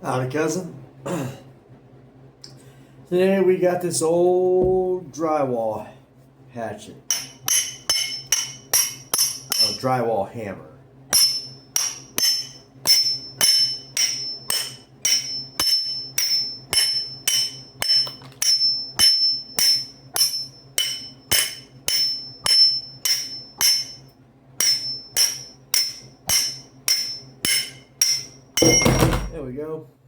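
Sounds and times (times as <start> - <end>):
hammer striking metal: 7.1 - 9.9, 11.1 - 29.5.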